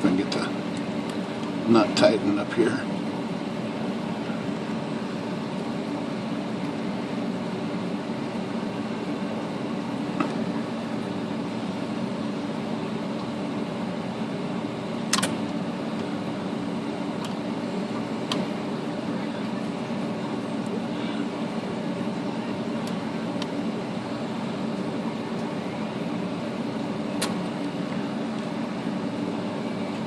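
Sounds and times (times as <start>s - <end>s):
machine hum: 0.0s - 30.0s.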